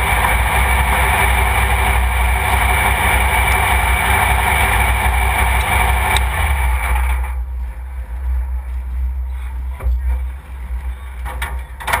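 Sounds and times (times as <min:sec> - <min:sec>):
vehicle running: 0:00.0 - 0:12.0.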